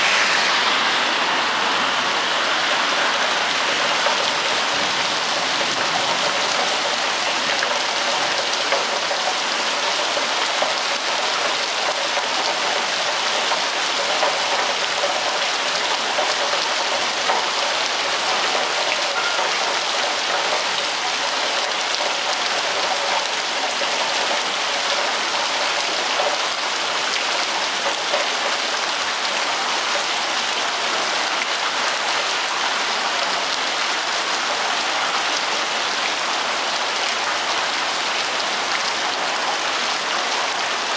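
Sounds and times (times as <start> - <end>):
steady rain patter: 0.0 - 40.9.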